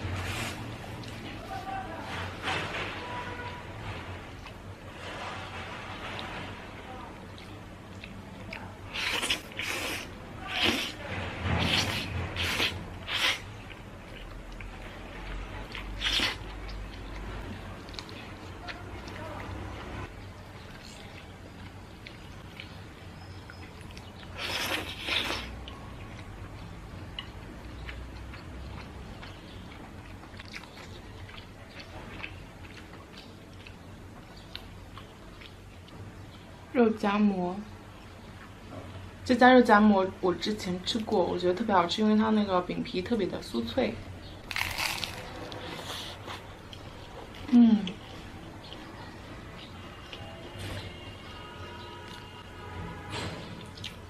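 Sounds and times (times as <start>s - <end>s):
chewing: 7.2s - 36.0s, 44.4s - 50.8s
noodle slurping: 11.6s - 13.5s.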